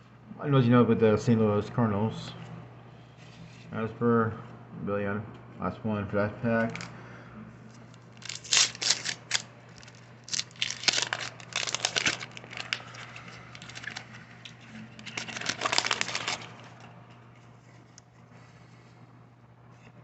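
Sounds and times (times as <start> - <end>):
faint steady hum: 0.0 - 20.0
wax-paper wrapper crinkling: 6.6 - 6.9, 7.7 - 18.2.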